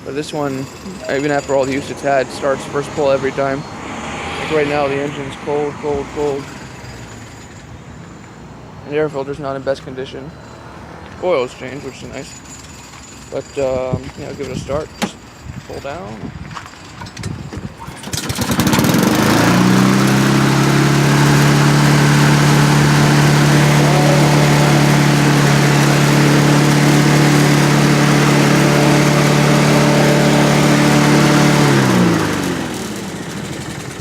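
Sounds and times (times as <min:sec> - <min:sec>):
lawn mower engine starting and running: 0:00.0 - 0:08.4, 0:17.6 - 0:34.0.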